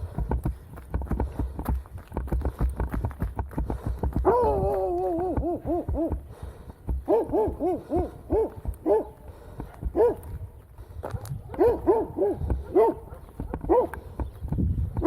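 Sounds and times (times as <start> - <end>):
running footsteps: 0.0 - 15.0
dog barking: 7.1 - 10.4, 11.1 - 14.0.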